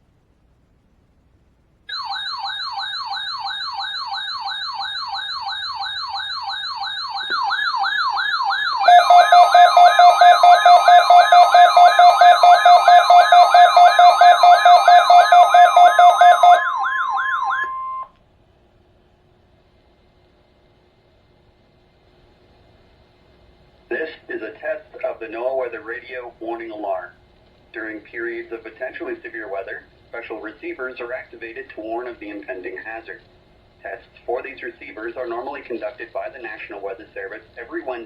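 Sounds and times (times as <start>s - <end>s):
emergency alert siren wailing: 1.9s - 18.1s
steady electronic tone: 7.0s - 18.1s
loud pulsing beep: 7.1s - 18.1s.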